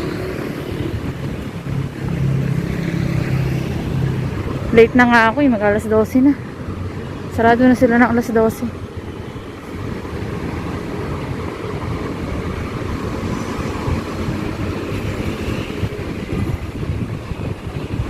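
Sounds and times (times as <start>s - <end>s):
cars passing: 0.0s - 18.0s
road rumble: 0.0s - 18.0s.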